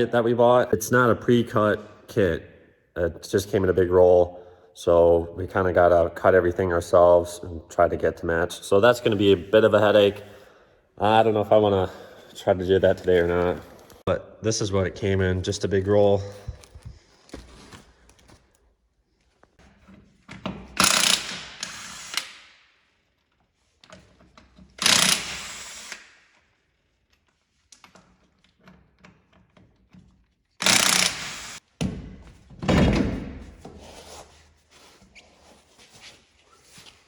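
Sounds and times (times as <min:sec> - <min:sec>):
power tool bursts: 0:20.8 - 0:22.4, 0:24.8 - 0:26.1, 0:30.6 - 0:31.6.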